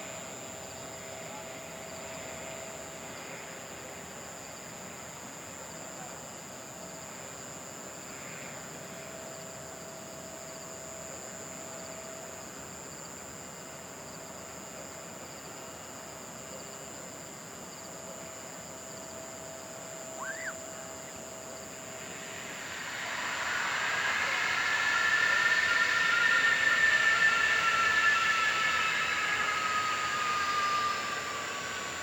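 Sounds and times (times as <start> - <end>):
distant jet engine whine: 0.0 - 32.0
faint hiss: 0.0 - 32.0.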